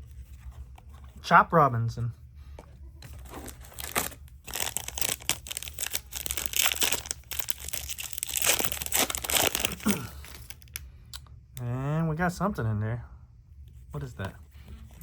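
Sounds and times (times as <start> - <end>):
cellophane wrapper crinkling: 3.2 - 10.8.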